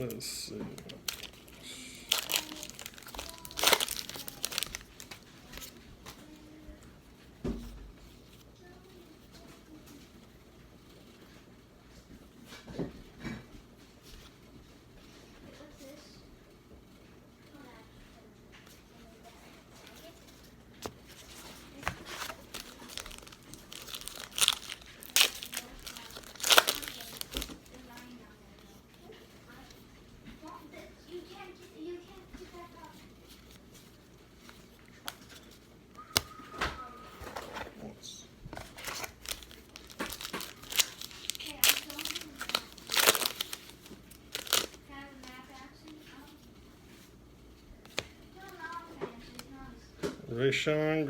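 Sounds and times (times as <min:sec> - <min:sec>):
foil wrapper crinkling: 0:00.1 - 0:06.6, 0:19.3 - 0:37.8, 0:38.5 - 0:47.1.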